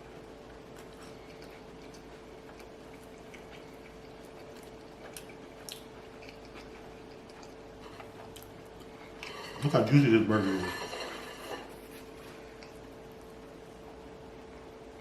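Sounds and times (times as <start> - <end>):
steady hum: 0.0 - 15.0
person chewing: 0.1 - 9.6.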